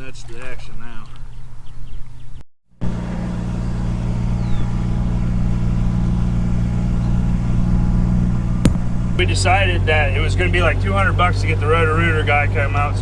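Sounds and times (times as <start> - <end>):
vehicle engine running steadily: 2.8 - 13.0.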